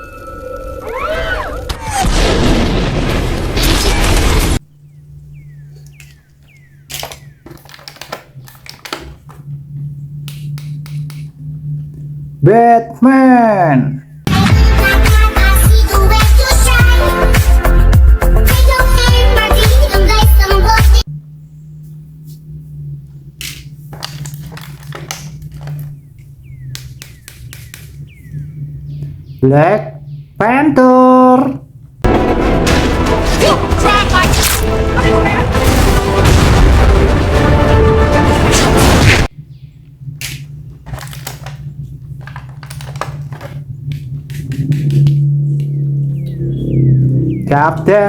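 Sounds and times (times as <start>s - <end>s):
steady low hum: 4.6s - 14.3s, 21.0s - 32.1s, 39.0s - 48.0s
plastic pieces clicking and tapping: 5.8s - 9.4s, 10.3s - 11.3s, 23.4s - 28.0s, 40.2s - 45.7s.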